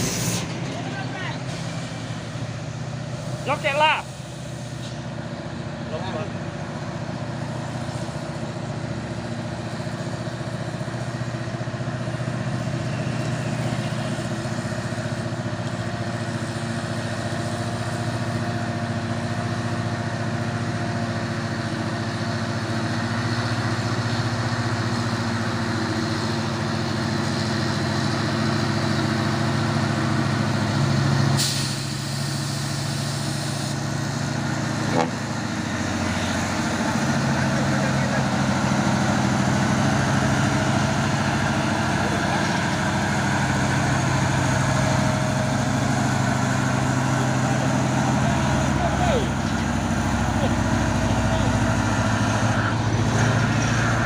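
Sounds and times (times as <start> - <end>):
diesel truck engine under load: 0.0 - 54.0
short burst of hiss: 31.4 - 33.8.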